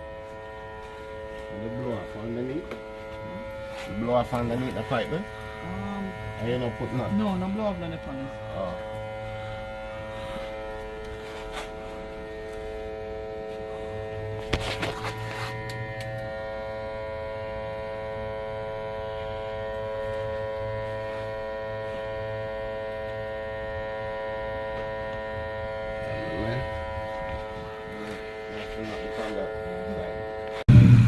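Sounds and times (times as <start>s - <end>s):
higher tone: 0.0s - 12.2s
machine electric hum: 0.0s - 31.0s.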